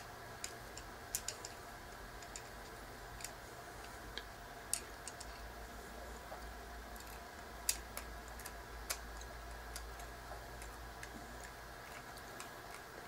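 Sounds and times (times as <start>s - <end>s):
screw clicks and ticks: 0.4s - 5.4s.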